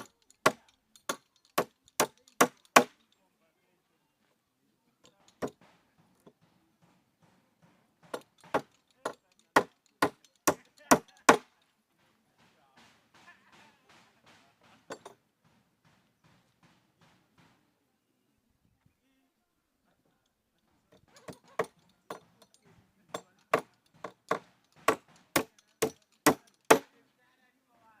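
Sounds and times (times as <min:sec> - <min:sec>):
sharp strikes on wood: 0:00.0 - 0:03.0, 0:05.3 - 0:11.5, 0:12.4 - 0:17.7, 0:23.1 - 0:26.9.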